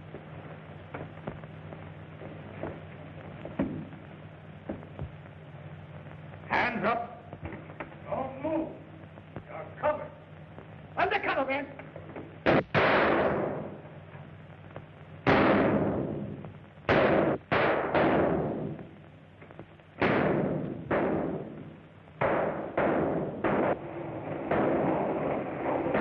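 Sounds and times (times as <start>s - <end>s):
echoing gunshots: 12.4s - 13.9s, 15.2s - 19.0s, 20.0s - 26.0s.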